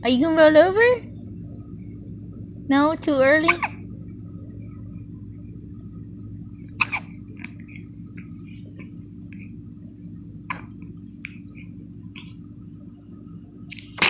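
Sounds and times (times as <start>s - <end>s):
steady low hum: 0.0s - 14.0s
baby hiccuping: 3.5s - 3.8s, 6.8s - 7.1s.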